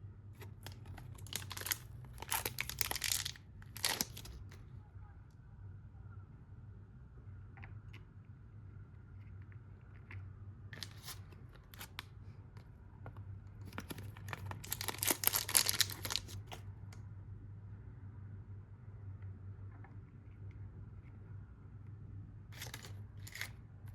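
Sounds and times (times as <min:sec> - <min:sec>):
packaging tearing and rustling: 0:00.4 - 0:04.4, 0:10.8 - 0:12.0, 0:13.7 - 0:16.6, 0:22.6 - 0:23.5.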